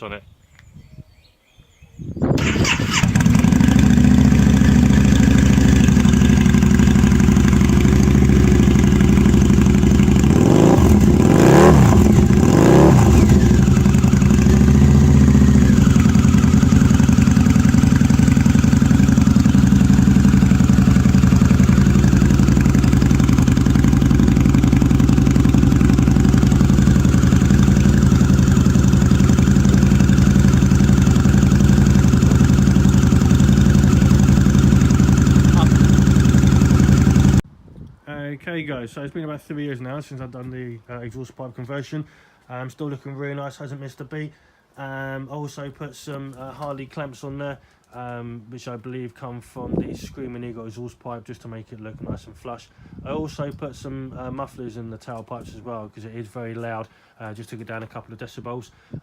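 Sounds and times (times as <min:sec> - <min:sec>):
motorcycle engine idling: 0:02.4 - 0:37.4.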